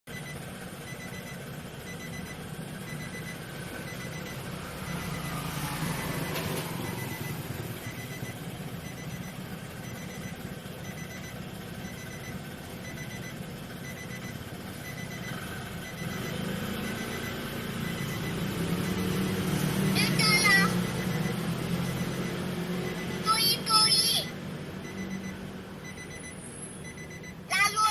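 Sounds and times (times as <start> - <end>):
car engine idling: 0.1 - 27.5
turn signal ticking: 0.1 - 27.9
child's voice from horn speaker: 20.0 - 20.8, 23.2 - 24.3, 27.5 - 27.9.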